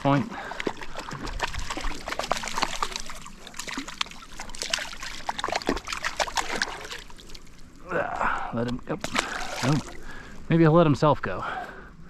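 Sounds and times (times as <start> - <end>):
fish splashing at water surface: 0.1 - 7.6, 9.0 - 10.3.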